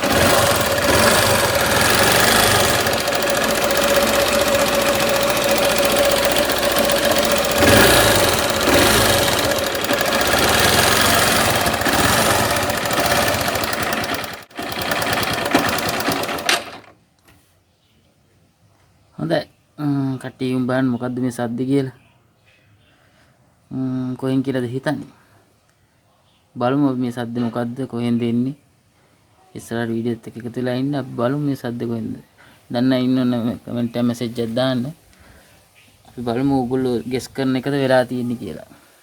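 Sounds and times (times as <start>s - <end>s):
motorcycle engine clattering: 0.0s - 17.0s.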